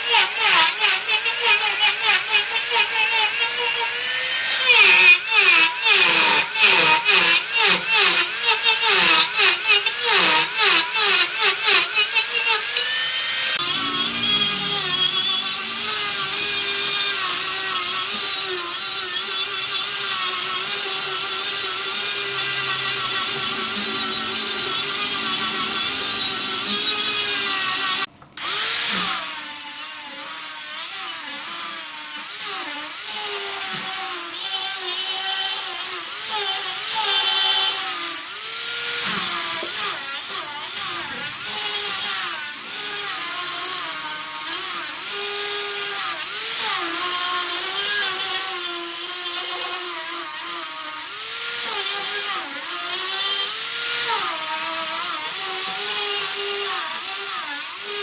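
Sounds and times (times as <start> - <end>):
wood lathe whine: 0.0 - 58.0
hiss of wood shaving: 0.1 - 19.2.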